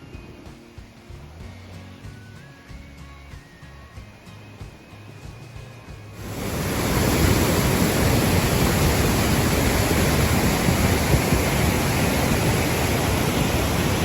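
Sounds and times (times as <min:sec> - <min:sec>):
waterfall rushing: 0:06.2 - 0:14.0.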